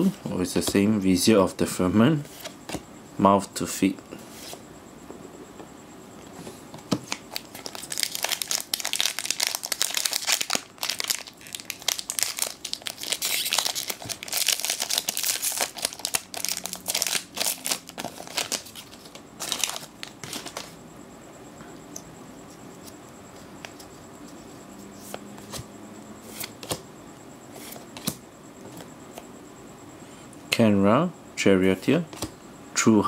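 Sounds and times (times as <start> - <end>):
foil wrapper crinkling: 7.1 - 20.7.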